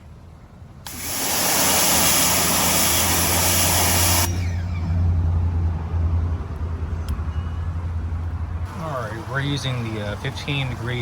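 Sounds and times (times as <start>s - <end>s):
pressure washer spray hissing: 0.9s - 4.4s
pump motor hum: 0.9s - 4.8s.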